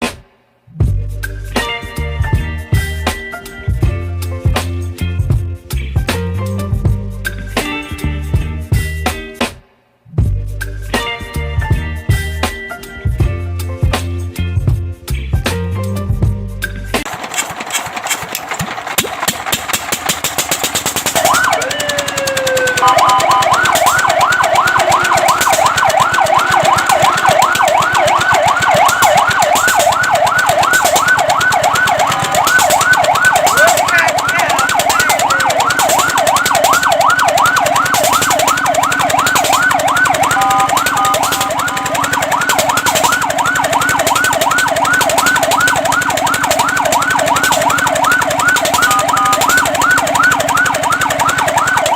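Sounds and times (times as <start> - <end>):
fast rhythmic pulsing: 17.0 - 51.9
fire truck siren wailing and yelping: 17.0 - 51.9.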